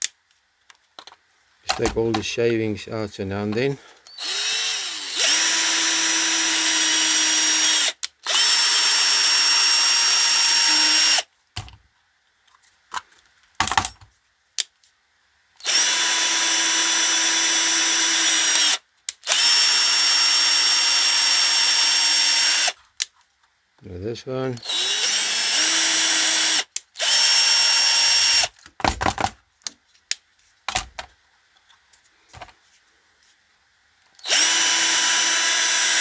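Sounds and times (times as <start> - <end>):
power drill running: 4.2 - 11.2, 15.6 - 22.8, 24.6 - 28.5, 34.2 - 36.0.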